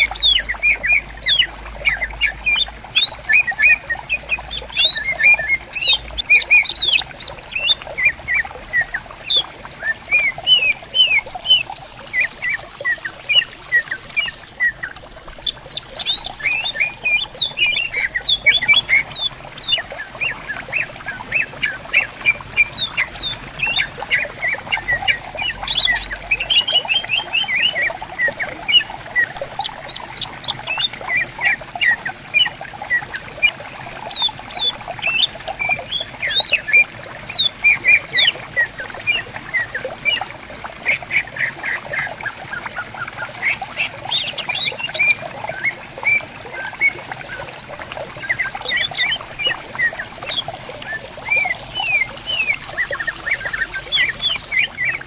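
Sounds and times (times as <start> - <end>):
stream rushing: 0.0 - 32.8
birds chirping and whistling: 0.0 - 40.2.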